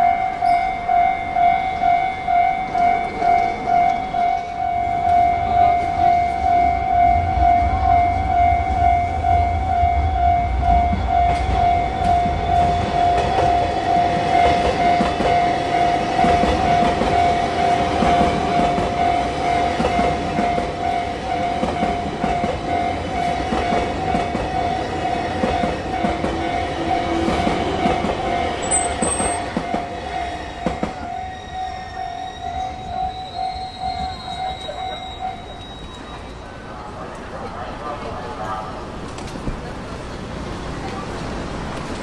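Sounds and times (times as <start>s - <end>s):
level-crossing warning bell ringing: 0.0s - 36.8s
train rumbling with clattering wheels: 0.0s - 42.0s
high squeal: 31.1s - 36.6s.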